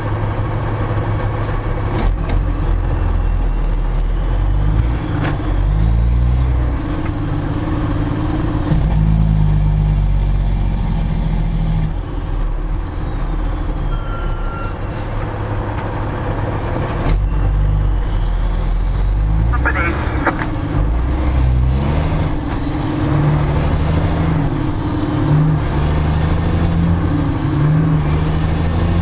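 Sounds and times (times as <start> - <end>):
truck diesel engine: 0.0 - 29.0
faint falling whistle: 12.0 - 14.9.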